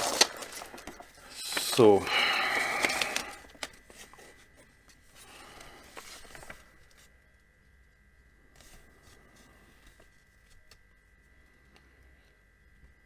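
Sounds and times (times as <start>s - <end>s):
paper pages rustling: 0.0s - 7.2s.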